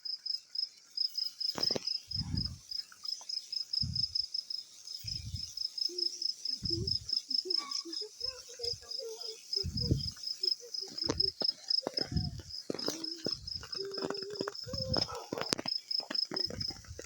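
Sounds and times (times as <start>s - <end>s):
crickets chirping: 0.0s - 17.0s
dull low thumps: 2.2s - 2.6s, 3.8s - 4.2s, 6.6s - 7.1s, 9.6s - 10.2s, 12.0s - 12.6s, 14.6s - 15.1s.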